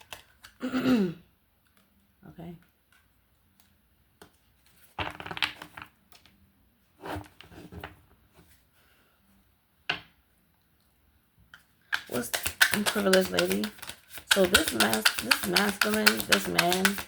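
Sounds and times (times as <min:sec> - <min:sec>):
cards shuffling: 0:11.9 - 0:17.0
card slap: 0:12.0 - 0:17.0.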